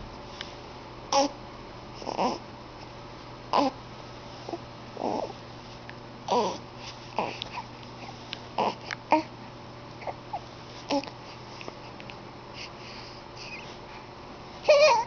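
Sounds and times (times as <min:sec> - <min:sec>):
baby cooing and grunting: 0:01.1 - 0:01.4, 0:02.0 - 0:02.4, 0:03.5 - 0:03.8, 0:05.0 - 0:05.4, 0:06.3 - 0:06.6, 0:07.2 - 0:07.7, 0:08.6 - 0:09.3, 0:10.0 - 0:11.1, 0:14.7 - 0:15.0.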